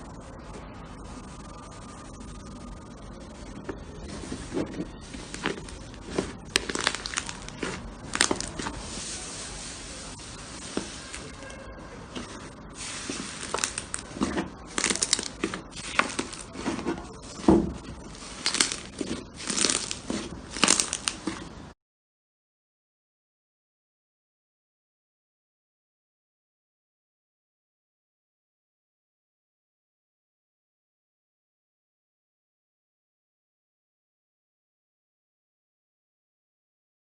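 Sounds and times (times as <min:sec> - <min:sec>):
slime squeezed by hand: 0:05.1 - 0:09.2, 0:18.2 - 0:21.4
crackly pops and clicks: 0:05.2 - 0:08.8, 0:13.1 - 0:21.5.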